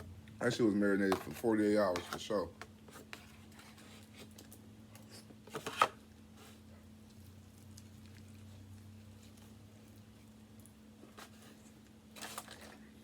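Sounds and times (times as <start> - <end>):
person chewing food: 6.5 - 12.0
small clicks and crackles: 7.0 - 12.9.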